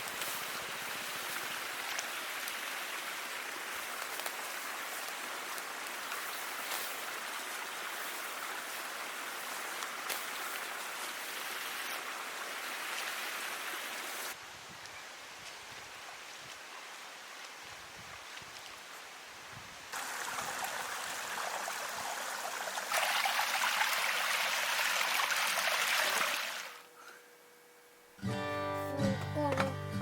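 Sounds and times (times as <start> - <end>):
hiss of water: 0.0 - 14.7, 15.7 - 26.8.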